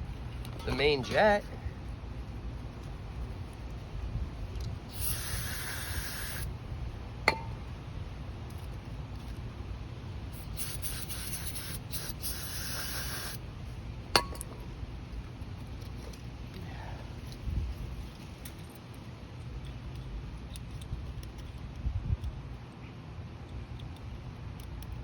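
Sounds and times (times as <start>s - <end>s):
aerosol spray hissing: 4.9s - 6.5s, 10.3s - 13.4s.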